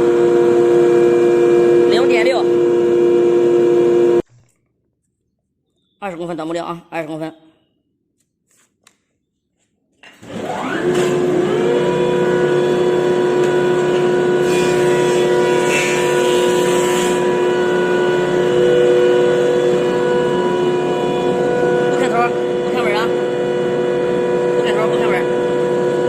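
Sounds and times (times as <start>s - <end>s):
electric planer motor whining: 0.0s - 4.2s, 10.2s - 26.0s
planer cutting wood: 0.0s - 4.2s, 10.1s - 26.0s.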